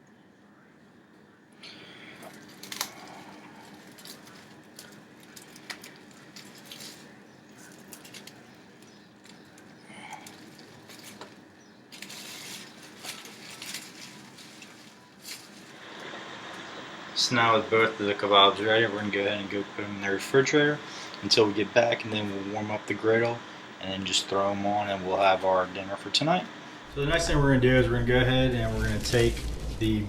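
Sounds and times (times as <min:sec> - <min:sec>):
faint steady hum: 0:00.0 - 0:30.0
kitchen clicks and rustles: 0:01.6 - 0:15.8.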